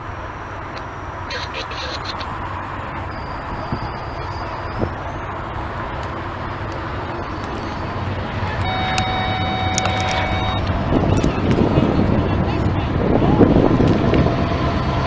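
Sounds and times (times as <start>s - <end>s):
low rumble: 0.0s - 15.0s
locomotive air horn blast: 8.4s - 10.9s.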